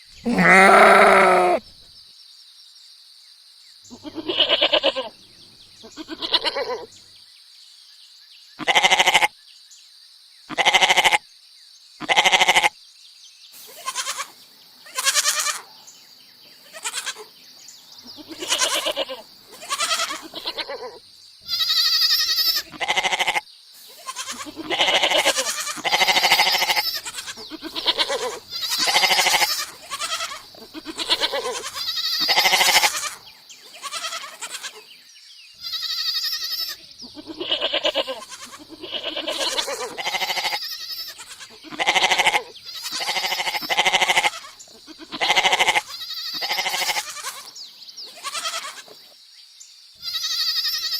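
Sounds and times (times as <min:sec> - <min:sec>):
goat bleating: 0:00.2 - 0:01.6, 0:08.6 - 0:09.0, 0:18.2 - 0:20.6, 0:21.5 - 0:23.4, 0:24.1 - 0:33.2, 0:33.8 - 0:34.8, 0:35.6 - 0:47.5, 0:48.2 - 0:48.9, 0:50.0 - 0:50.9.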